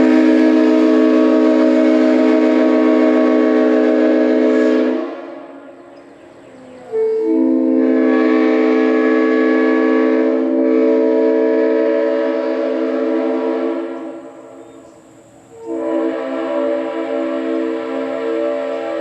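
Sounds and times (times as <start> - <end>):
train horn chord blast: 0.0 - 19.0.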